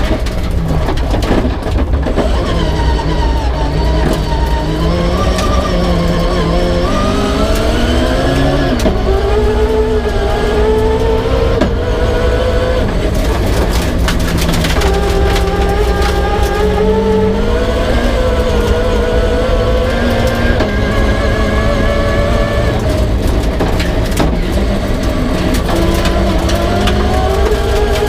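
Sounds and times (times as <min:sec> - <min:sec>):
clattering: 0:00.0 - 0:06.6, 0:12.8 - 0:16.9, 0:22.8 - 0:28.0
rally car engine revving: 0:00.0 - 0:28.0.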